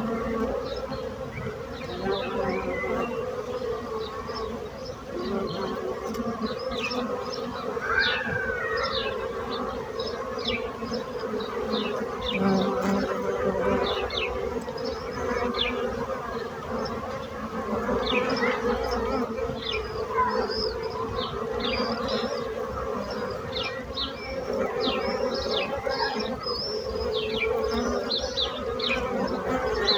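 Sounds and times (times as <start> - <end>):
bees buzzing: 0.0 - 29.9.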